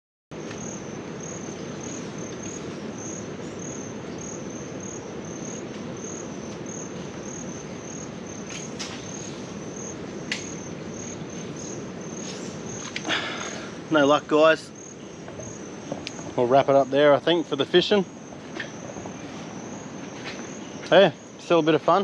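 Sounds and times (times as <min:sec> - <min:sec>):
insects trilling: 0:00.4 - 0:22.0
low outdoor hiss: 0:00.4 - 0:22.0.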